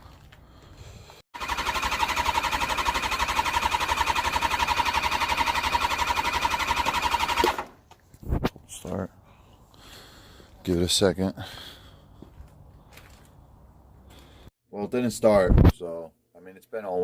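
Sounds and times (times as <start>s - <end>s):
motorcycle starter cranking: 1.4s - 7.8s.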